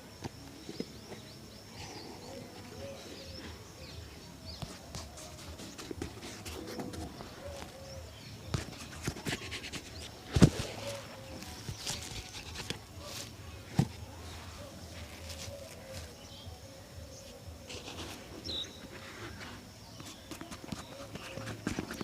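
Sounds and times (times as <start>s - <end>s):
faint bird calls: 0.6s - 22.0s
shoe brush strokes and taps: 4.5s - 7.8s, 17.8s - 22.0s.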